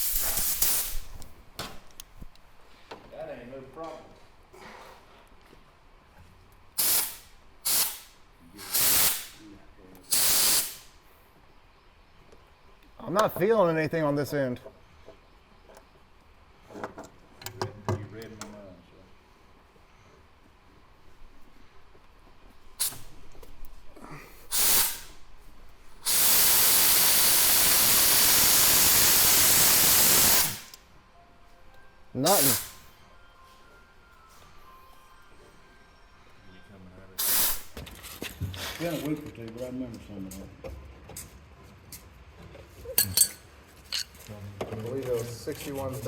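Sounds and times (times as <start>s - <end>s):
air blow gun blasts: 0.0s - 1.1s, 6.8s - 9.4s, 10.1s - 10.9s, 24.5s - 25.2s, 26.0s - 30.7s, 32.3s - 32.8s, 37.2s - 37.8s
loud compressed air hiss: 0.0s - 1.2s, 6.7s - 11.2s, 22.8s - 23.2s, 24.4s - 25.3s, 26.0s - 30.8s, 32.2s - 32.9s, 37.2s - 37.8s.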